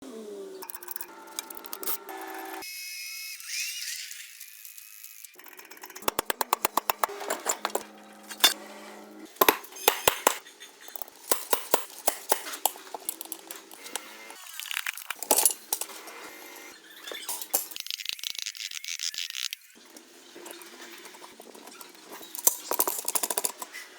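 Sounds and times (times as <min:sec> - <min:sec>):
hand tools clinking on metal: 0:06.0 - 0:08.6, 0:09.3 - 0:14.4, 0:21.7 - 0:23.8.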